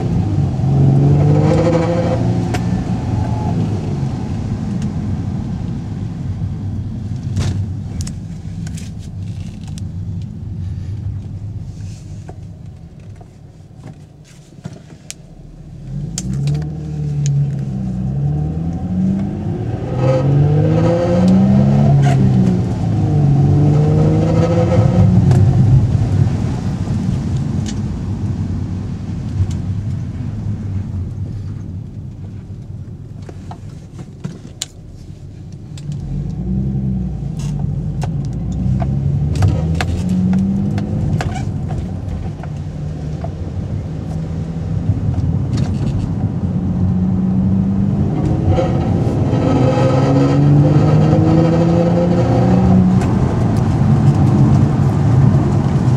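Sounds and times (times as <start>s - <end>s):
car engine revving: 0.0s - 10.2s, 15.3s - 29.0s, 35.7s - 55.9s.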